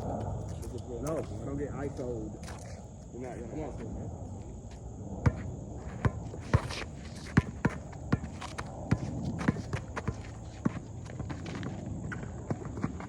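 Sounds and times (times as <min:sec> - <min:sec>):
footsteps on hard court: 0:00.0 - 0:13.0
basketball bouncing: 0:05.2 - 0:13.0.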